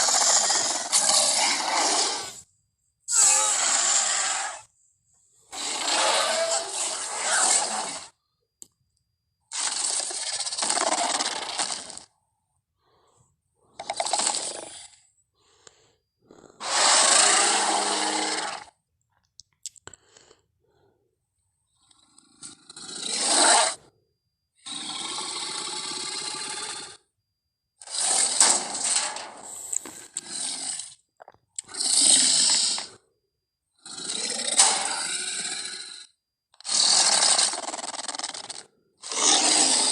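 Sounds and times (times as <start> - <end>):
harsh creature growl: 0.0 - 2.4, 5.5 - 8.1, 9.5 - 12.1, 16.2 - 18.8, 21.8 - 23.8, 27.8 - 31.0, 31.6 - 33.0, 33.8 - 39.9.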